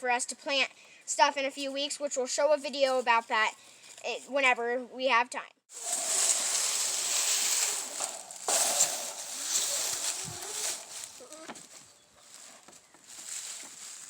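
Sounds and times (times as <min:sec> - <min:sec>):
water spraying from hose: 0:05.7 - 0:11.3.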